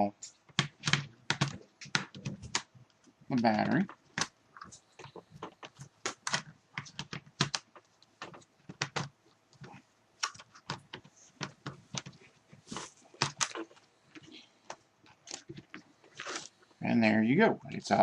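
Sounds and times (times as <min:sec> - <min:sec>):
laptop battery clicks and knocks: 0:00.5 - 0:02.7, 0:05.0 - 0:09.2.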